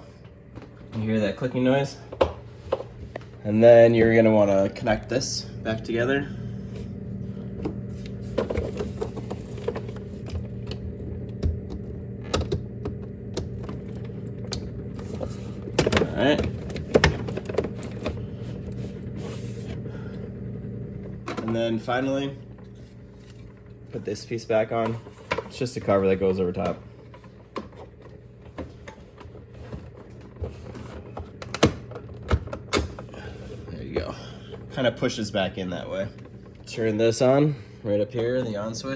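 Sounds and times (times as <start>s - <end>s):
steady low hum: 0.0s - 38.9s.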